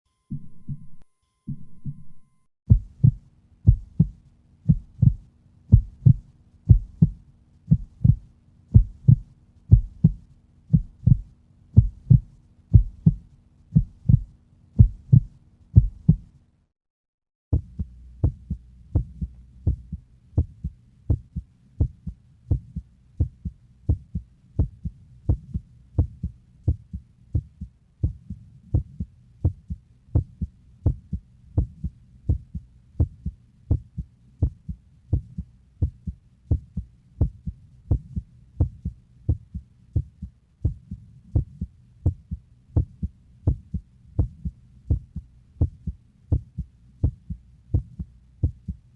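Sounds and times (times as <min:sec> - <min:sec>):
heartbeat thumps: 0:00.3 - 0:16.3, 0:17.5 - 0:48.9.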